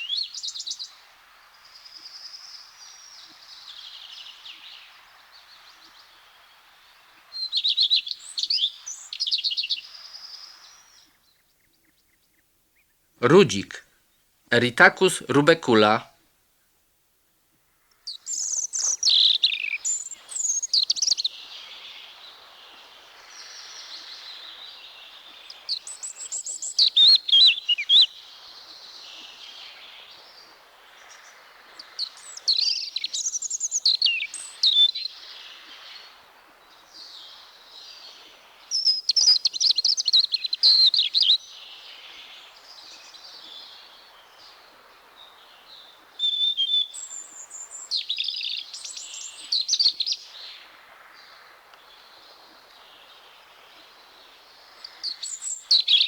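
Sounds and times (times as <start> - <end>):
robin singing warbling phrases: 13.2 - 13.8, 14.5 - 16.0.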